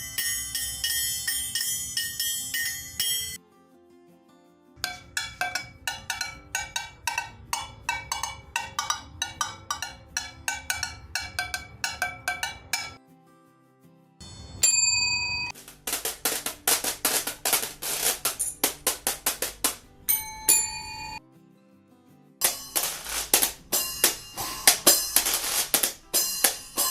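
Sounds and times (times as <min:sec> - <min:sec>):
bell-like percussion strikes: 0:00.0 - 0:03.4, 0:14.2 - 0:15.6, 0:20.1 - 0:21.2, 0:22.4 - 0:26.9
bright hissy percussion hits: 0:22.4 - 0:26.9.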